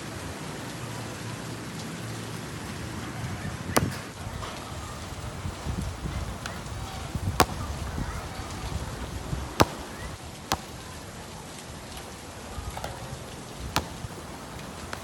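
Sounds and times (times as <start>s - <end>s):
basketball bouncing on court: 6.4s - 11.1s, 12.8s - 15.0s.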